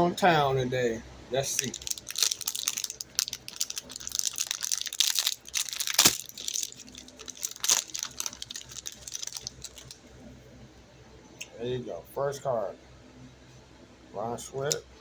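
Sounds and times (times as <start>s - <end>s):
plastic wrapper crinkling: 1.5s - 10.0s
plastic wrapper ripping: 1.6s - 10.0s.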